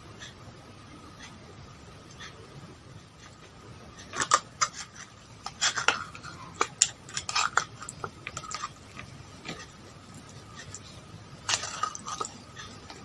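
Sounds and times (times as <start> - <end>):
utensils clicking and scraping: 3.2 - 13.0.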